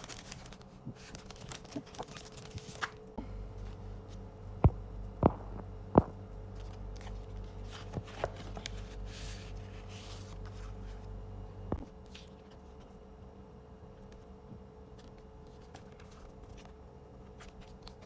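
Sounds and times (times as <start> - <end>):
plastic or paper rustling: 0.0 - 3.0
steady electrical hum: 3.0 - 18.0.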